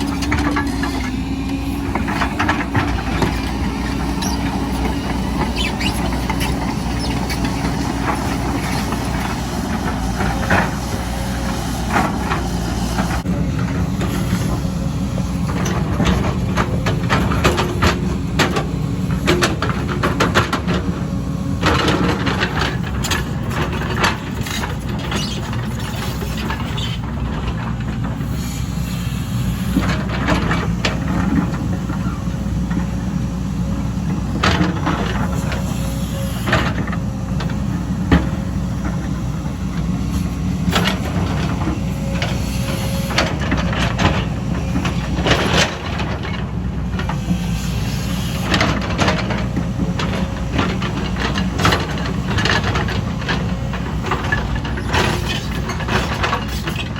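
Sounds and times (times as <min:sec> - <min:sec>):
metallic clanks and squeaks: 0:00.0 - 0:13.2, 0:21.6 - 0:29.0, 0:48.0 - 0:56.9
heavy diesel machine engine: 0:00.0 - 0:56.9.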